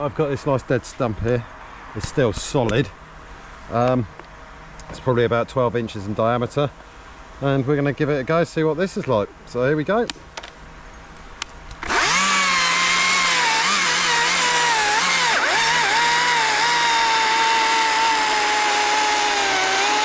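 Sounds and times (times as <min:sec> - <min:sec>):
electric chainsaw cutting wood: 0:11.8 - 0:20.0.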